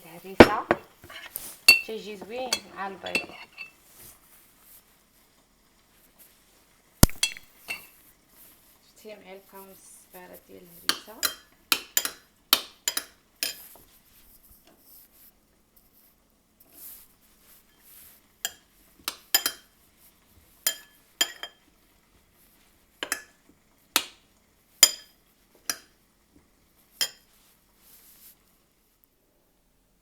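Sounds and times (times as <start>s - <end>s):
metal spoon clinking on dish: 0.4s - 3.8s, 7.2s - 7.9s, 19.4s - 19.7s, 20.7s - 21.6s, 23.0s - 23.4s, 24.8s - 25.1s, 27.0s - 27.3s.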